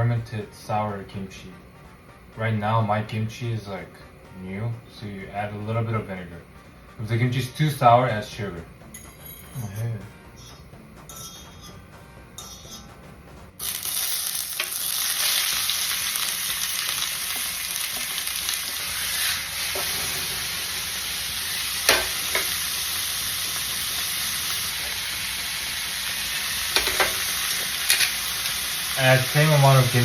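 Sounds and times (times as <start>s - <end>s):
meat sizzling in a hot pan: 13.6s - 30.0s
utensil clicking on pan: 21.8s - 22.6s, 26.7s - 28.2s.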